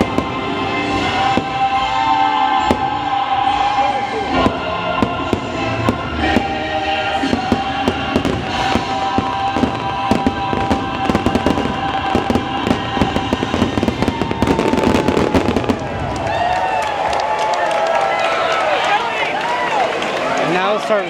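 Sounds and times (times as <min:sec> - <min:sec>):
music soundtrack: 0:00.0 - 0:16.6
fireworks bangs and crackles: 0:00.0 - 0:18.0.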